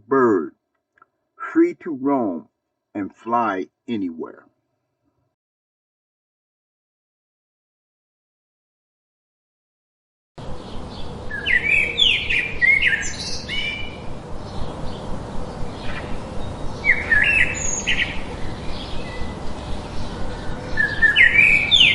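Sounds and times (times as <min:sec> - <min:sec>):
small birds chirping: 0:10.4 - 0:21.9
steady background noise: 0:10.4 - 0:21.9.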